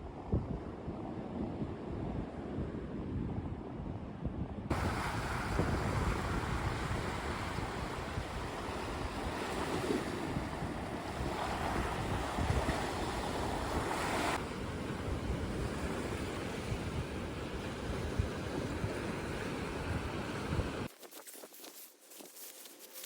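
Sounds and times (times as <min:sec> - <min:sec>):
wind buffeting microphone: 0:00.0 - 0:20.9
sea waves washing ashore: 0:04.7 - 0:20.9.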